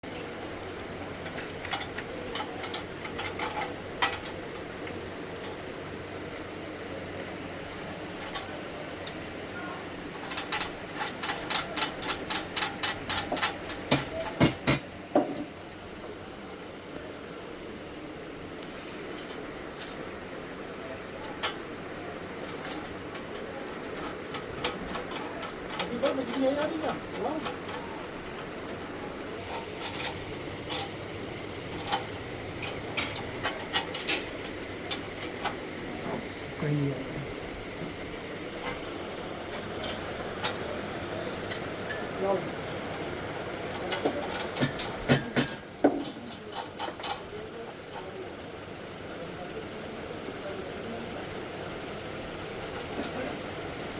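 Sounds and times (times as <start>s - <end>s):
steady background noise: 0.0s - 53.9s
sharp clicks on metal frame: 10.2s - 14.9s, 43.7s - 48.1s.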